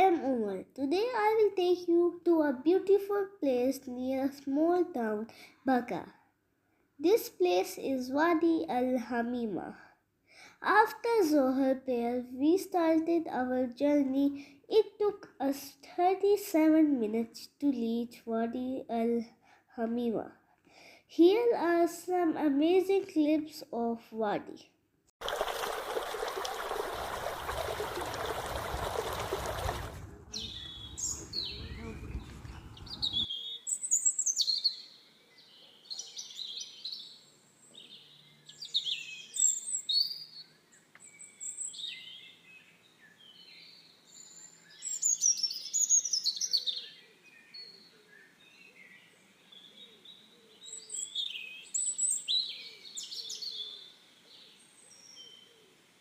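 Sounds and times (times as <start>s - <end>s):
small birds chirping: 27.4s - 55.8s.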